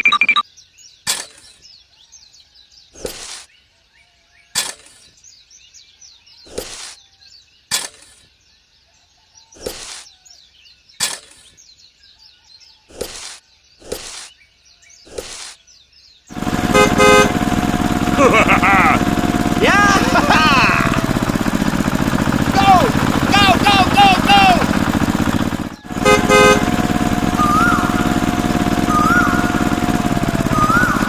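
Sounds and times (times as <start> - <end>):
scraping or rustling: 6.5 - 7.0, 9.6 - 10.1, 12.9 - 14.3, 15.1 - 15.6.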